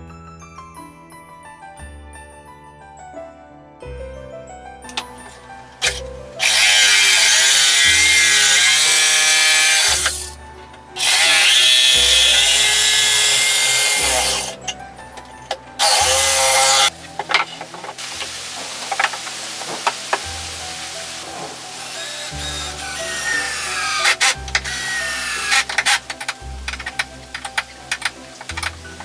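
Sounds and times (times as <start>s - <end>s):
power saw cutting wood: 4.9s - 10.4s, 11.0s - 14.8s, 15.8s - 29.0s.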